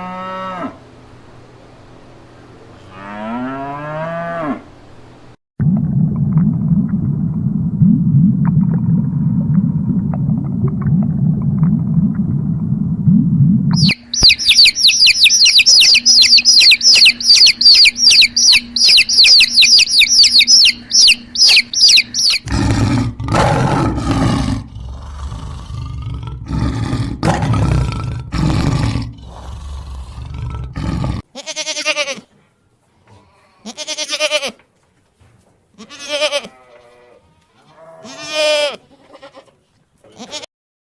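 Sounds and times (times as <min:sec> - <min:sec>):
deep rough animal calls: 0:13.1 - 0:31.2
animal bleating: 0:30.8 - 0:32.3, 0:33.1 - 0:34.6, 0:35.8 - 0:40.5.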